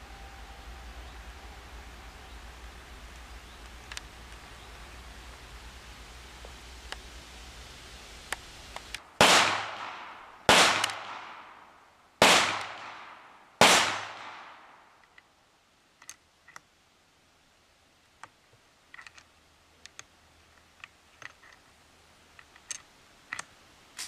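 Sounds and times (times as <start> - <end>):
faint clicks: 2.6 - 5.4, 18.2 - 24.0
gunshots with echo: 9.2 - 14.8.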